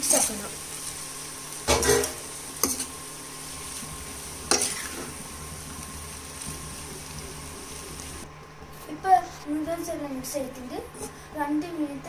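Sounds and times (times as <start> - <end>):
utensil scraping a frying pan: 0.0 - 8.2
frying sizzle: 0.0 - 8.3.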